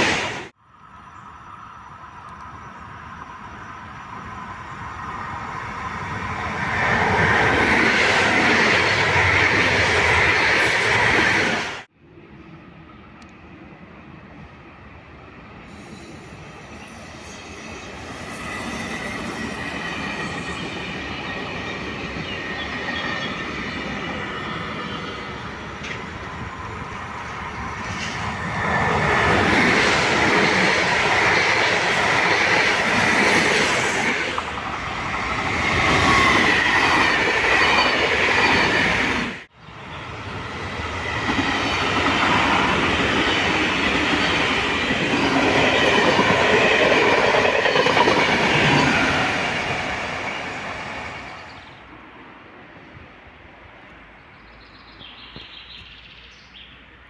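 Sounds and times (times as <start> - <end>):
train wheels rumbling on rails: 2.2 - 11.9, 15.6 - 51.9
train wheel squeal: 15.6 - 51.9.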